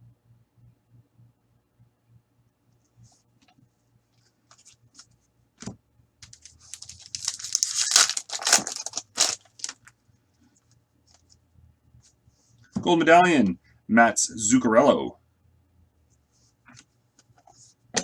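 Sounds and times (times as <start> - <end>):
foil pack tearing and crinkling: 6.2 - 9.9
small rustles: 6.2 - 11.4.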